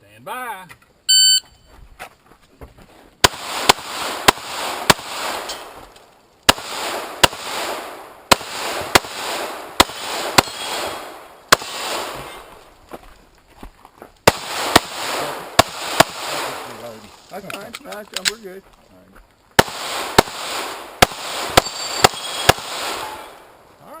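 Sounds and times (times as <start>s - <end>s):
pistol shots with echo: 3.2s - 5.8s, 6.5s - 12.5s, 14.3s - 16.7s, 19.6s - 23.5s.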